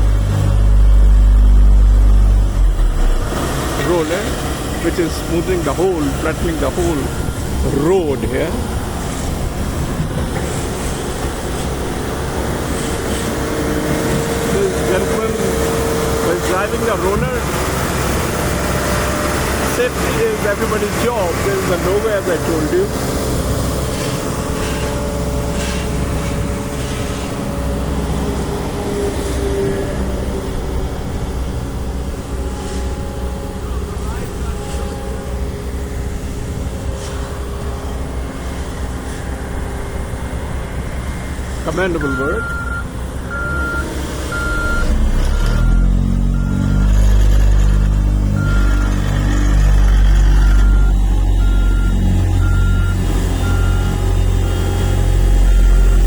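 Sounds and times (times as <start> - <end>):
diesel engine rumbling: 0.0 - 56.0
reversing alarm beeping: 5.1 - 8.2, 42.0 - 47.2, 48.3 - 56.0.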